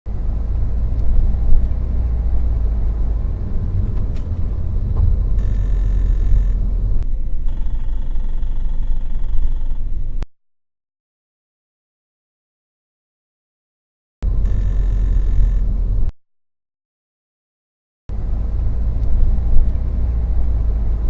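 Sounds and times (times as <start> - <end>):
road and engine rumble: 0.1 - 10.2, 14.2 - 16.1, 18.1 - 21.0.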